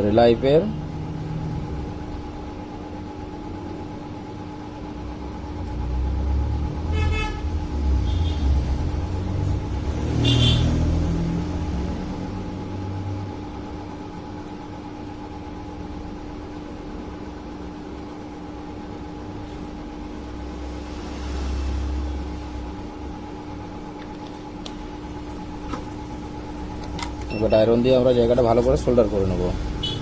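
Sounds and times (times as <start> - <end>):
steady electrical hum: 0.0 - 30.0
vehicle passing by: 7.6 - 12.4, 20.3 - 23.2.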